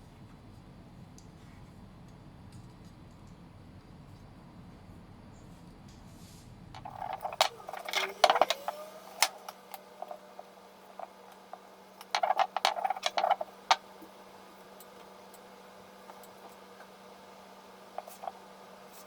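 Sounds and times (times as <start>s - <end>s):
objects rattling and clattering: 6.8s - 13.9s, 18.0s - 19.0s.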